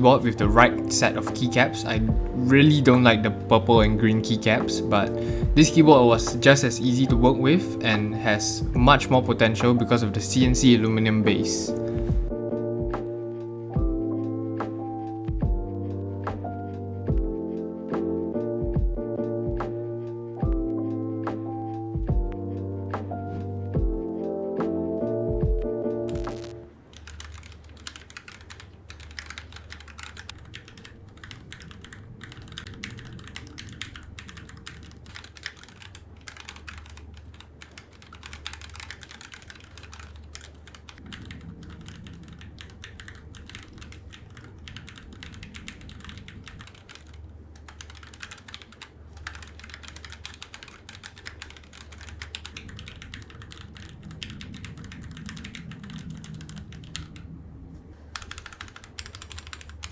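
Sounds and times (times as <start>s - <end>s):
fast keyboard typing: 0.0s - 12.3s, 26.1s - 57.3s, 58.1s - 59.9s.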